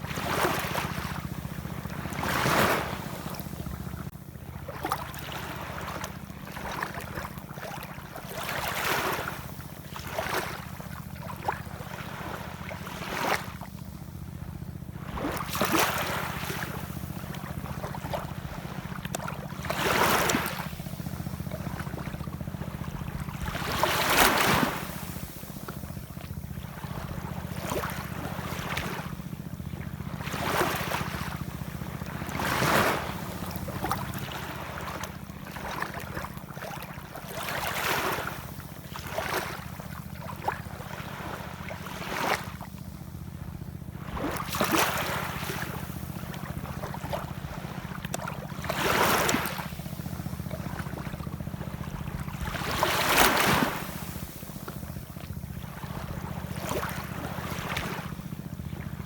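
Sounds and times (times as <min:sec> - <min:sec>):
steady low rumble: 0:00.0 - 0:07.2, 0:42.8 - 0:59.0
ocean waves washing in: 0:00.0 - 0:13.6, 0:14.2 - 0:42.5, 0:43.6 - 0:59.0.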